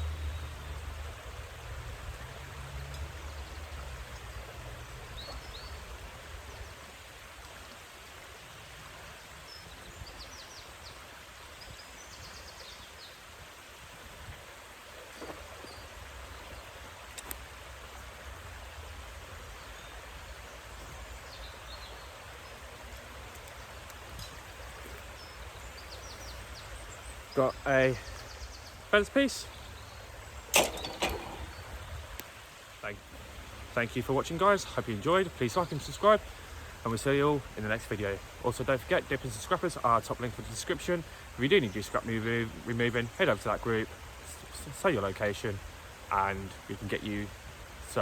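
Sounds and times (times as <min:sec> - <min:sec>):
light ticks: 0:02.8 - 0:03.2, 0:17.1 - 0:17.5, 0:23.0 - 0:25.0, 0:32.1 - 0:32.3.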